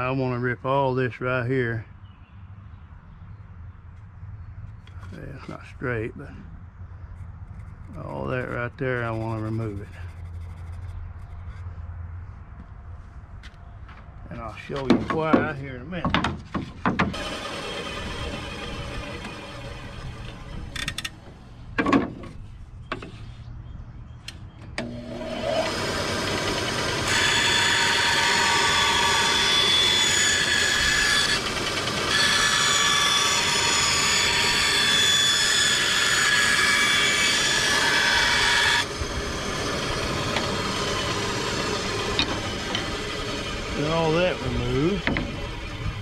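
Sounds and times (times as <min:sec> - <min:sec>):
knocks: 0:14.8 - 0:17.2
electric power saw cutting wood: 0:17.0 - 0:21.1, 0:24.8 - 0:46.0.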